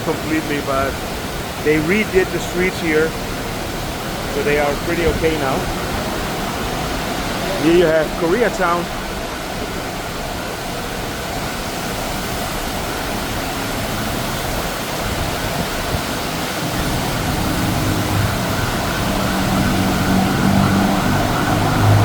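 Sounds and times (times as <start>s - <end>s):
heavy rain falling: 0.0s - 22.0s
road traffic engine hum: 0.0s - 22.0s.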